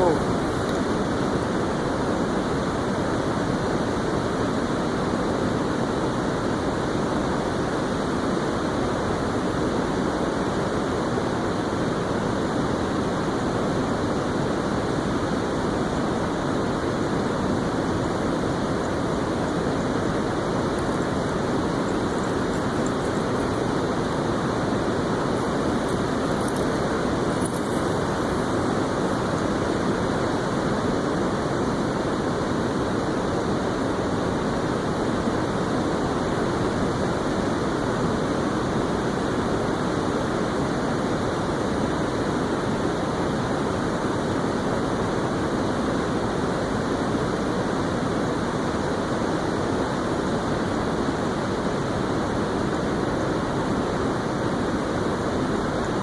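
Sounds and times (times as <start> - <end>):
steady rushing noise: 13.4 - 35.2.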